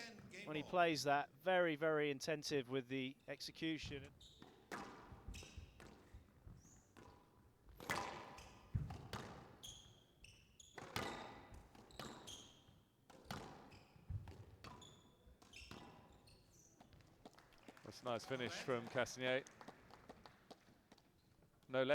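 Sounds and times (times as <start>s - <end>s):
shoes squeaking on court floor: 0.0s - 0.6s, 3.2s - 18.9s
squash ball hitting rackets and walls: 4.1s - 17.5s.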